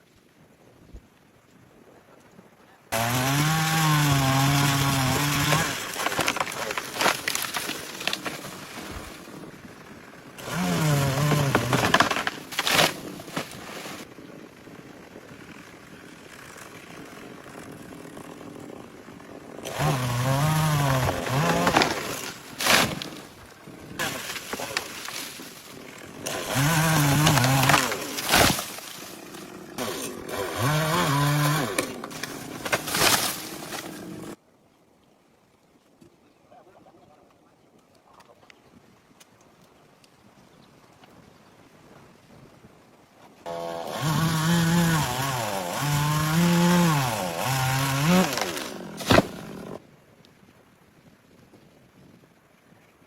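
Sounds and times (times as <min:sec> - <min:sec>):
chainsaw revving: 0:02.9 - 0:14.1, 0:15.3 - 0:34.4, 0:43.5 - 0:49.8
sharp crack: 0:05.4 - 0:08.7, 0:11.2 - 0:14.1, 0:21.0 - 0:23.4, 0:24.0 - 0:25.7, 0:26.3 - 0:30.5, 0:31.5 - 0:34.0, 0:48.2 - 0:49.5.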